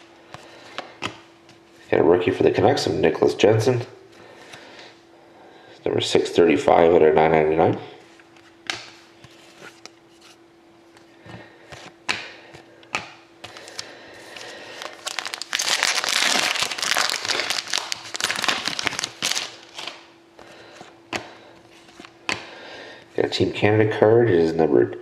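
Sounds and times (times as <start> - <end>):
card pack wrapper crinkling: 13.4 - 20.1.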